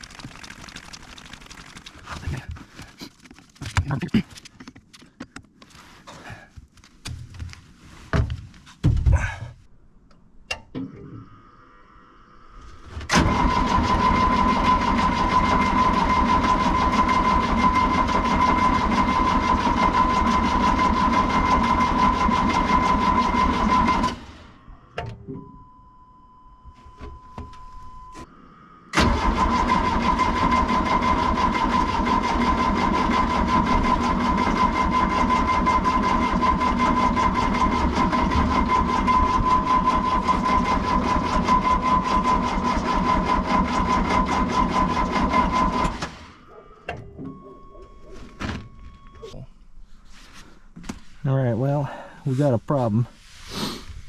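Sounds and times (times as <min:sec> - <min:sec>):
diesel engine cranking: 0:12.8 - 0:24.6, 0:28.9 - 0:49.2.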